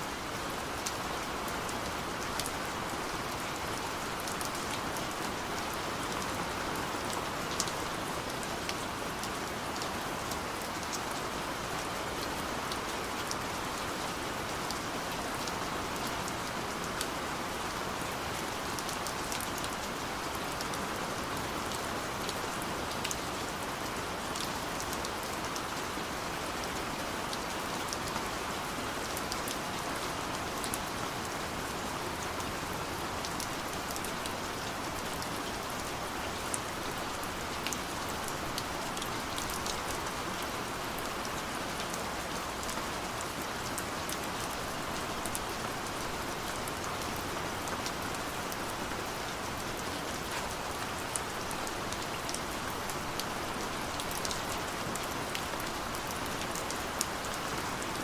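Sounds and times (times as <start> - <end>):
steady rain falling: 0.0 - 58.0.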